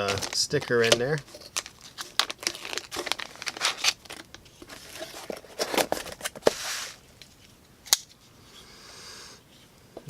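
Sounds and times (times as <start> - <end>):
packaging crinkling and rustling: 0.0 - 7.5.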